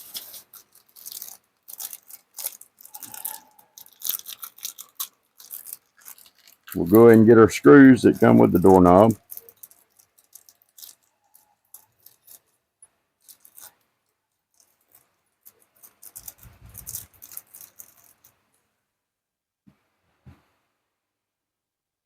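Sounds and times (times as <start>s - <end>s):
small metal screws clicking: 0.0s - 7.2s, 8.2s - 18.4s
rustling and clinking: 0.0s - 18.7s.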